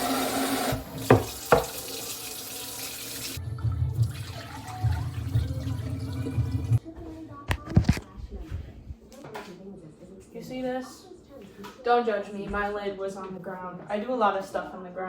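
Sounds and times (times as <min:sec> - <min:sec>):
water running in sink: 0:00.0 - 0:06.8.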